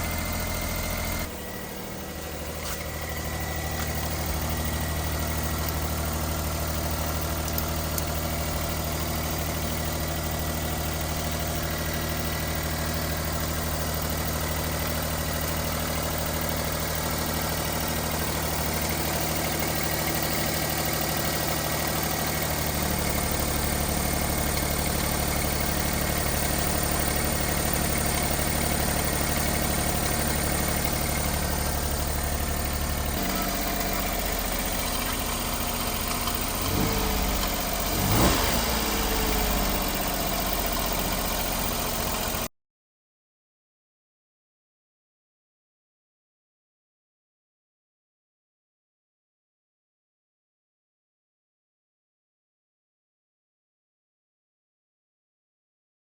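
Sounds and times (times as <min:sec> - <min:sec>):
small truck engine idling: 0:00.0 - 0:42.5.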